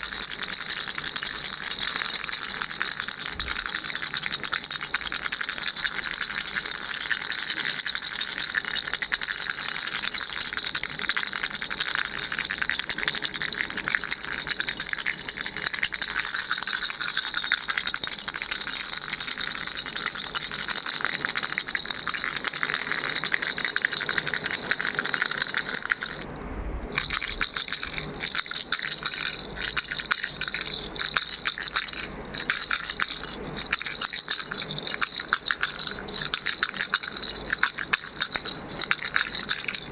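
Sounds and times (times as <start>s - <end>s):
baby rattle shaking: 0.0s - 26.3s, 27.0s - 39.9s.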